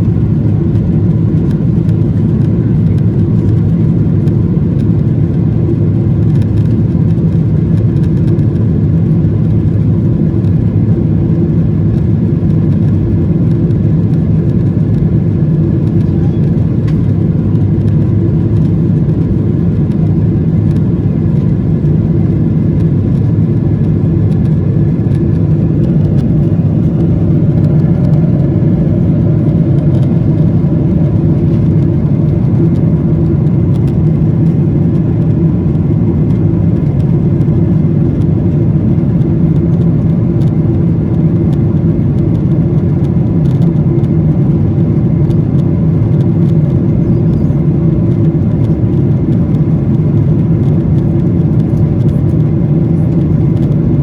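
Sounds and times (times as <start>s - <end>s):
aeroplane engine drone: 0.0s - 54.0s.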